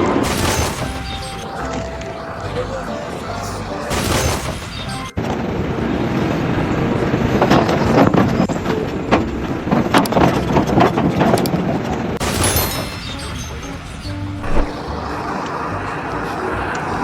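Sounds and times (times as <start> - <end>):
machinery running loudly: 14.4 - 17.0.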